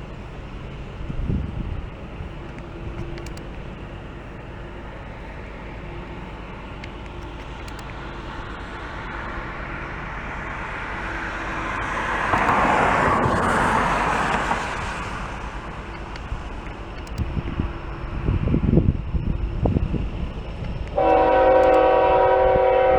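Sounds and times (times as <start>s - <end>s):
vehicle passing by: 9.3s - 15.8s.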